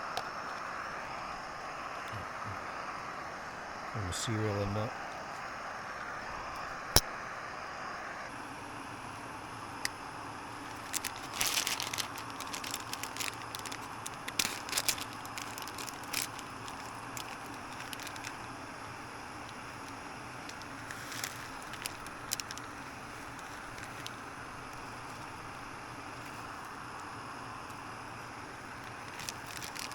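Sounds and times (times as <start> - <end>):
steady hiss: 0.0 - 29.9
cereal packet crinkling: 10.6 - 18.6, 19.5 - 25.3, 28.8 - 29.9.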